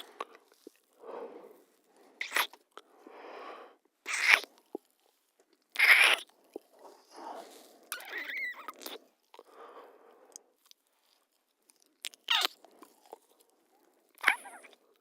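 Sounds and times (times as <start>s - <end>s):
wet kissing lip smacks: 2.2s - 2.6s.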